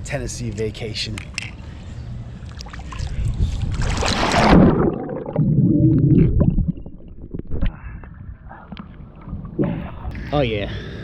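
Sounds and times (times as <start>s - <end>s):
underwater bubbling and gurgling: 2.6s - 10.2s
splash into pool water: 3.7s - 5.0s.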